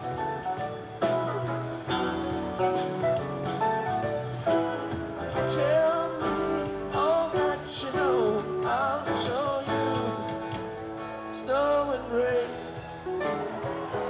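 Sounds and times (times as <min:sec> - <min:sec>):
lead electric guitar bending notes: 0:00.0 - 0:08.3
live rock band playing: 0:00.0 - 0:14.0.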